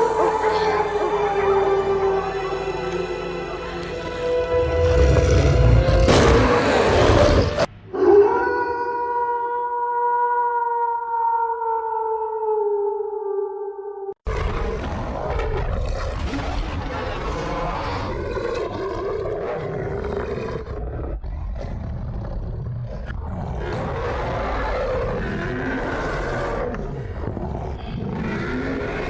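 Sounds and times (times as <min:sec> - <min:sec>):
werewolf roaring: 0:04.5 - 0:09.4, 0:17.2 - 0:29.0.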